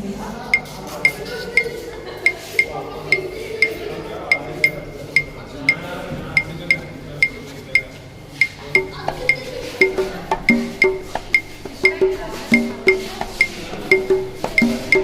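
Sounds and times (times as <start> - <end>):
music with clinking percussion: 8.4 - 15.0.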